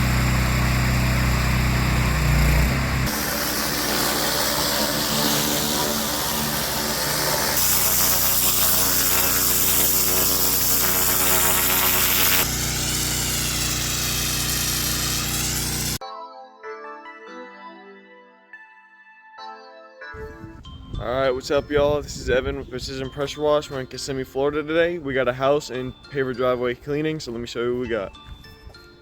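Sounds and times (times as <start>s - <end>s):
pressure washer engine running: 0.0s - 16.0s
high-pressure water spray hiss: 3.1s - 16.0s.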